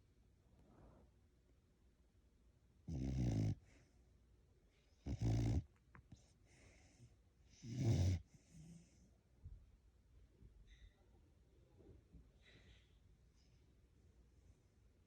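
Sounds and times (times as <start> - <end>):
loud deep snores: 2.9 - 3.6, 5.1 - 5.6, 7.6 - 8.2.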